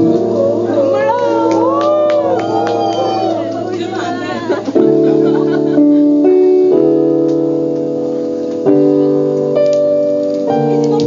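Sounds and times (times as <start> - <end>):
sustained piano chords: 0.0 - 11.0.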